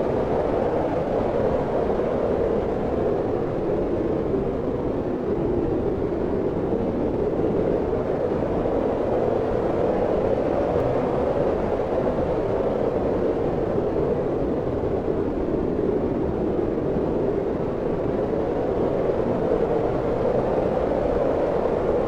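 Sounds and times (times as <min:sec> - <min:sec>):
steady wind blowing: 0:00.0 - 0:22.0.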